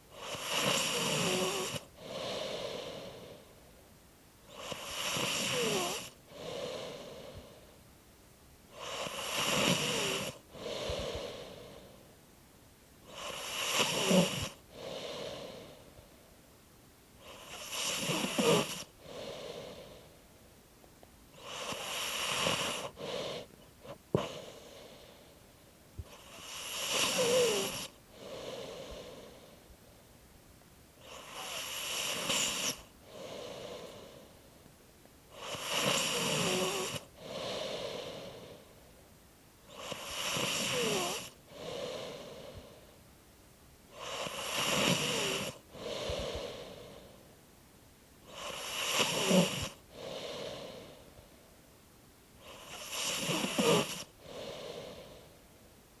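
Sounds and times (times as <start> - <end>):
slow regular snoring: 0.0 - 3.5, 4.5 - 7.7, 8.7 - 12.0, 13.0 - 15.9, 17.2 - 20.1, 21.3 - 25.3, 26.0 - 29.6, 31.0 - 34.4, 35.3 - 38.7, 39.7 - 42.9, 43.9 - 47.2, 48.2 - 51.1, 52.4 - 55.4.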